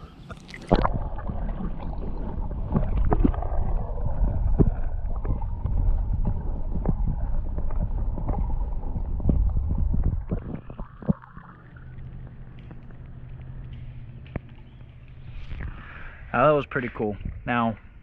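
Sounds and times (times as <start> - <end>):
muffled underwater water rumble: 0.0 - 18.0.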